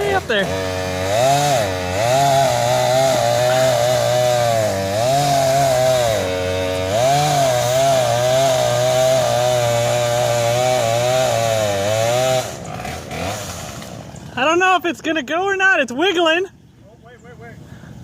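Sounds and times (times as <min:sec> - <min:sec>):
chainsaw cutting wood: 0:00.0 - 0:14.4.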